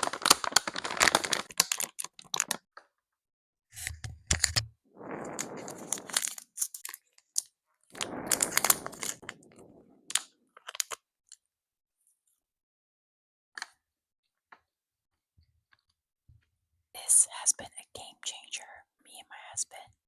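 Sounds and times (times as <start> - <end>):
breathy rushes of noise: 4.9 - 6.4, 7.9 - 10.2.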